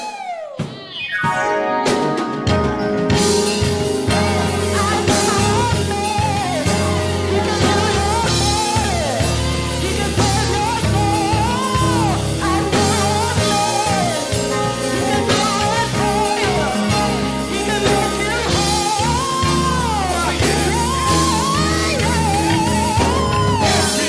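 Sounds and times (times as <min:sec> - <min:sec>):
gospel band with drums and bass: 0:00.0 - 0:24.0
sliding ornamented melody: 0:01.2 - 0:05.5
person singing: 0:04.1 - 0:24.0.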